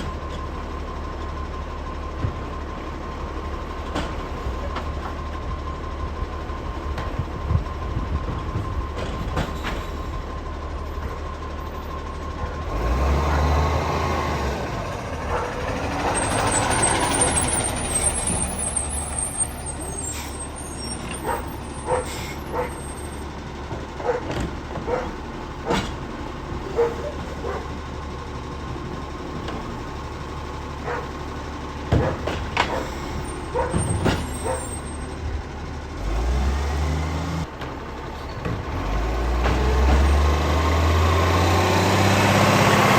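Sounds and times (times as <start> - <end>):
garbage truck engine rumble: 0.0 - 42.9
sharp knocks and clunks: 23.7 - 27.5, 31.9 - 34.6.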